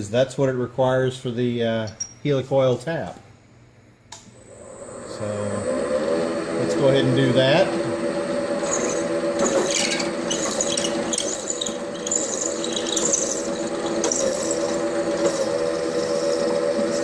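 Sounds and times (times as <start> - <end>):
milling machine spindle running: 4.5 - 17.0
drill bit squealing in metal: 8.6 - 17.0.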